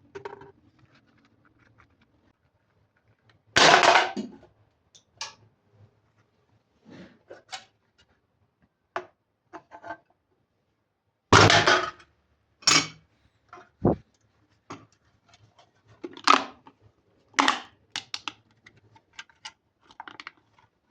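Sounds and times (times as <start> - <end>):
objects knocking and scraping: 0.0 - 4.5.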